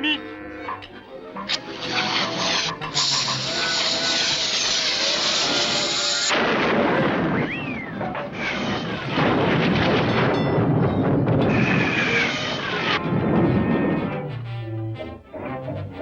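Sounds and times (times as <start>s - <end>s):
cartoon rumbling blast: 6.3s - 14.4s
cartoon falling whistle: 7.3s - 8.0s.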